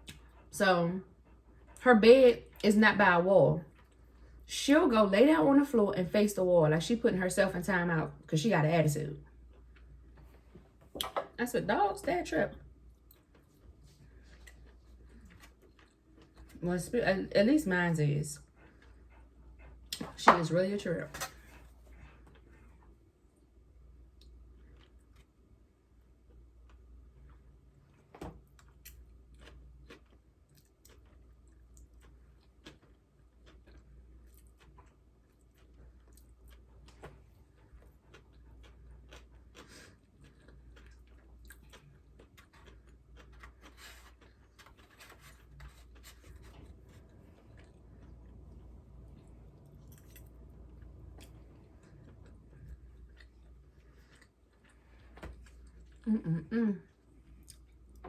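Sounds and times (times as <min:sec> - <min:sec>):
person chewing food: 0:09.3 - 0:11.1, 0:12.8 - 0:16.6, 0:21.2 - 0:56.1, 0:56.9 - 0:58.0.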